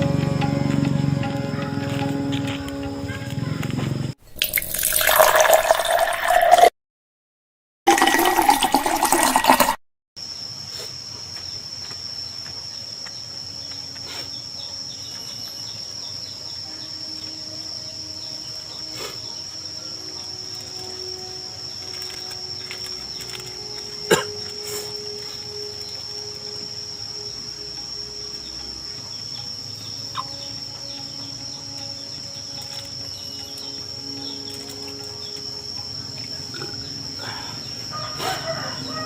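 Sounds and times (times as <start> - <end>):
crickets trilling: 0.0 - 6.6, 7.9 - 39.0
splash of pouring water: 4.3 - 6.7, 7.9 - 9.8.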